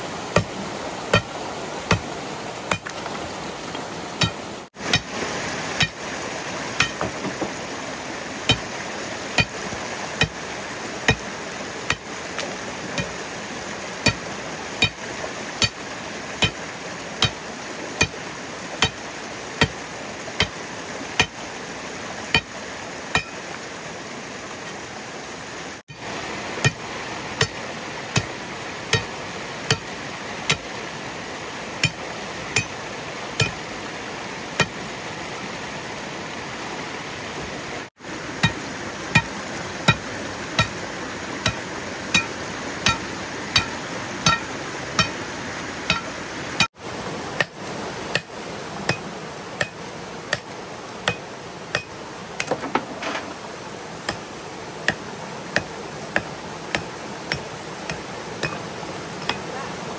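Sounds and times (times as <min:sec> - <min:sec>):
hand tool striking with ringing: 0:04.2 - 0:05.1, 0:06.8 - 0:07.1, 0:23.2 - 0:23.4, 0:31.8 - 0:32.0, 0:32.6 - 0:32.8, 0:33.4 - 0:33.6, 0:38.4 - 0:39.3, 0:41.4 - 0:42.3, 0:42.9 - 0:45.2, 0:45.9 - 0:46.1, 0:49.6 - 0:50.4, 0:51.1 - 0:52.5, 0:55.6 - 0:59.4.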